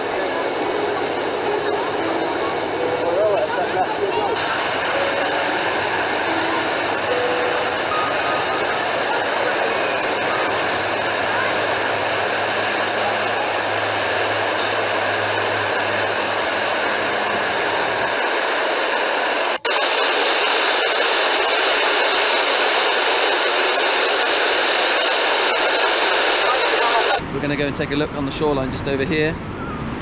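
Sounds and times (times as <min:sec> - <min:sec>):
loud rushing noise: 0:00.0 - 0:21.2
low hum: 0:00.0 - 0:23.2.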